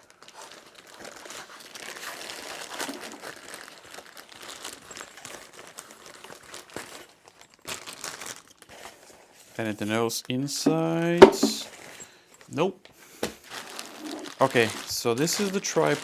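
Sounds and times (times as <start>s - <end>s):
packaging crinkling rustle: 0.0s - 16.0s.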